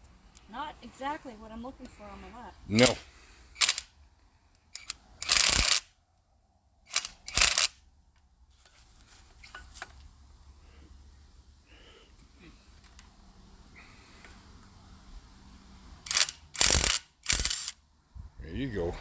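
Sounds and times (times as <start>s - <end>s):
hand tools rattling on engine: 4.8s - 5.8s, 16.1s - 17.7s.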